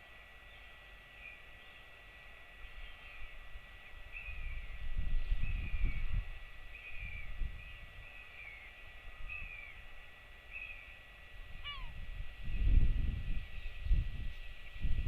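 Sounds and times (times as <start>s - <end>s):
high falling bird calls: 2.7s - 12.8s
wind buffeting microphone: 3.2s - 8.2s, 11.3s - 15.0s.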